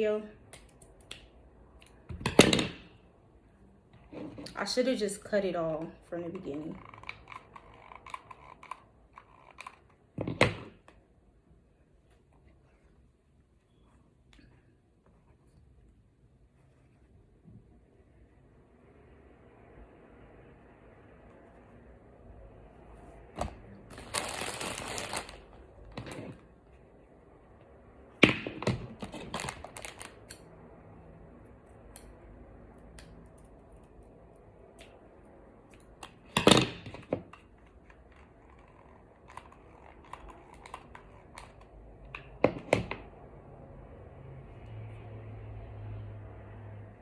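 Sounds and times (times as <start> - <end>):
crinkling rustle: 23.9 - 26.2, 29.1 - 30.2.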